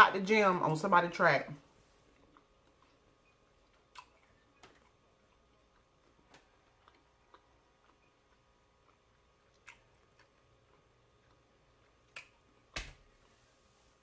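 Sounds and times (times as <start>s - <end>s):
faint clicks from person eating: 3.6s - 12.4s.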